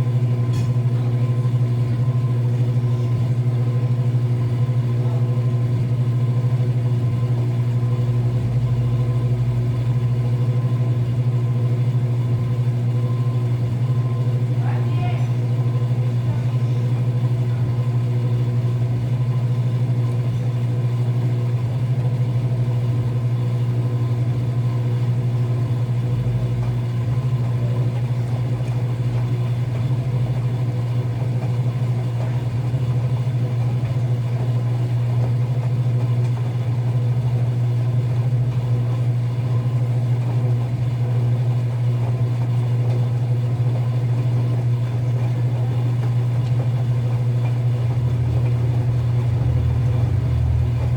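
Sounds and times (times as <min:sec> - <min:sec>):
washing machine humming: 0:00.0 - 0:50.9.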